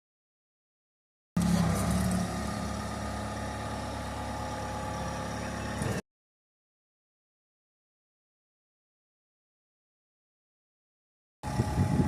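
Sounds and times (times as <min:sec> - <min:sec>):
diesel engine idling: 0:01.4 - 0:06.0, 0:11.4 - 0:12.0.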